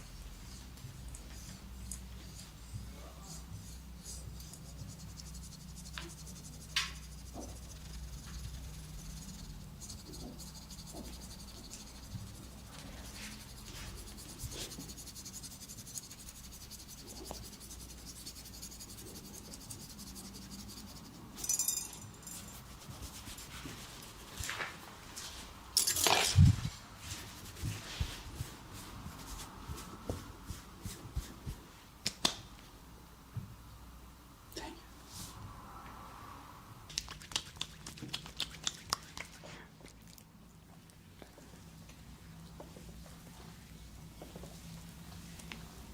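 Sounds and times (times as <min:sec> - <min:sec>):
hands rubbing skin and hair: 0:03.3 - 0:21.4, 0:22.2 - 0:25.5, 0:26.4 - 0:32.4, 0:36.9 - 0:39.5.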